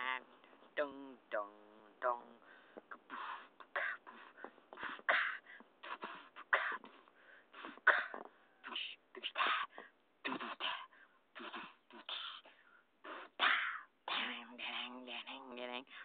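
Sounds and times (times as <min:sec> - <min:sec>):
person making mouth sound effects: 0:01.0 - 0:05.2, 0:05.8 - 0:07.0, 0:07.6 - 0:09.5, 0:10.2 - 0:15.6.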